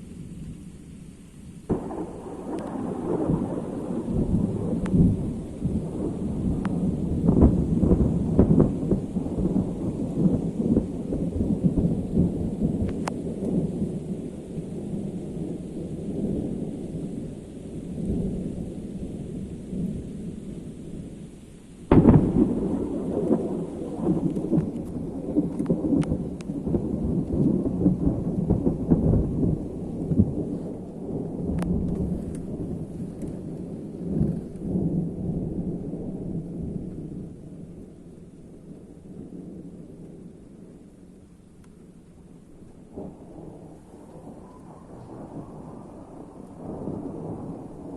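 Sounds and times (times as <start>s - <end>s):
sharp thunder crack: 1.7s - 14.0s, 21.9s - 37.2s, 42.9s - 47.9s
thunder rolling: 1.7s - 21.1s, 21.9s - 38.0s, 42.6s - 47.9s.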